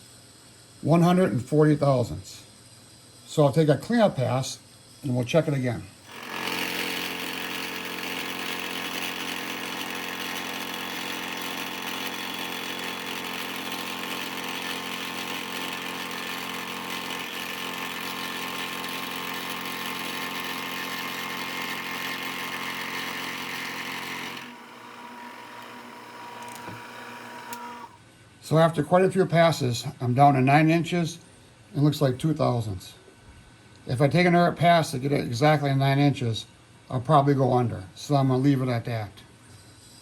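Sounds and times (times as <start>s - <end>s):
cutter hissing: 6.0s - 28.0s
milling machine hum: 6.0s - 28.0s.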